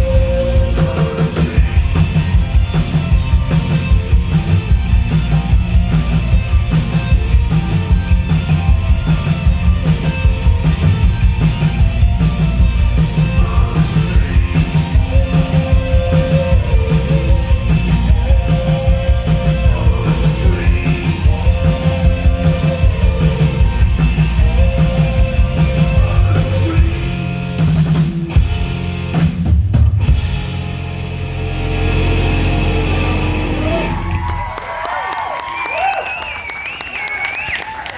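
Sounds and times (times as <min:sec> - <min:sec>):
person singing: 0:00.0 - 0:02.2, 0:13.3 - 0:27.3
live rock band playing: 0:00.0 - 0:34.6.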